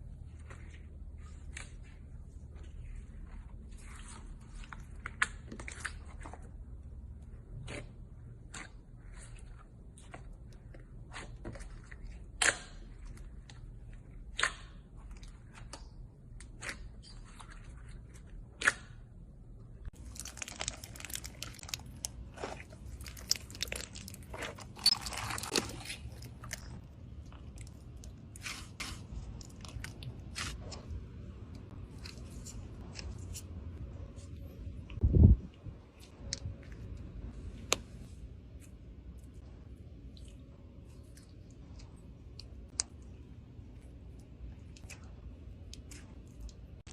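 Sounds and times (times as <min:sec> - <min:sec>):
slime popping and crackling: 0:20.0 - 0:26.7.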